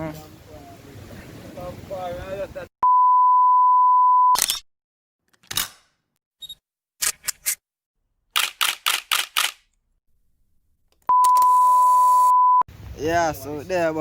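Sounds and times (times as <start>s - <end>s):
steady electronic beep tone: 2.8s - 4.4s, 11.1s - 12.7s
camera shutter clicks: 8.4s - 9.7s.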